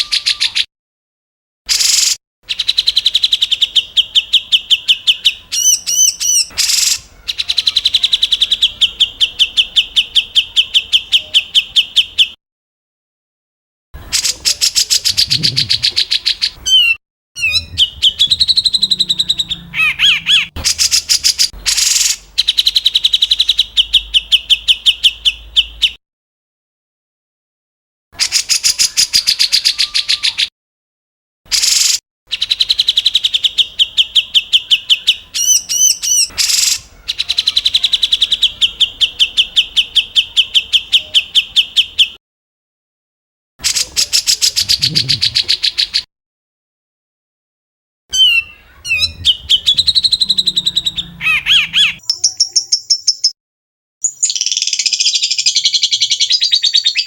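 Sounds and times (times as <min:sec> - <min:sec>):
songbird harsh repeated calls: 0:00.0 - 0:00.7, 0:01.7 - 0:12.4, 0:14.0 - 0:26.0, 0:31.5 - 0:42.2, 0:43.6 - 0:46.1, 0:48.1 - 0:53.3.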